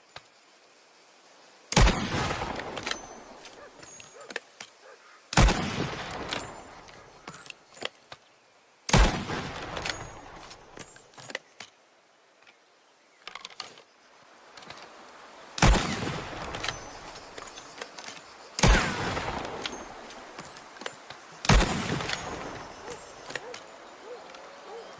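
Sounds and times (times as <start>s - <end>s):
rifle shots with echo: 5.4s - 6.7s, 8.9s - 10.2s, 18.6s - 20.0s, 21.4s - 23.5s.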